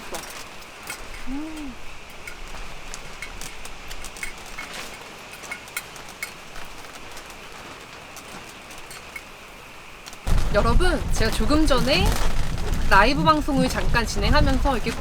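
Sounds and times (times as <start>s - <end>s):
crackles and pops: 10.0s - 15.0s.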